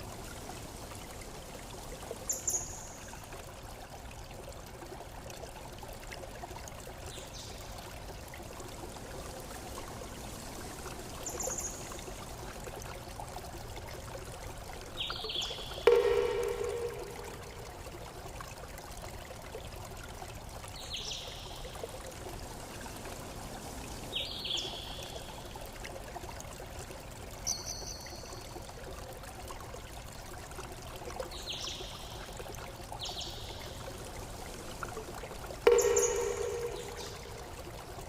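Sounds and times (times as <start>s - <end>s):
stream running: 0.0s - 38.0s
bird chirps: 35.7s - 37.5s.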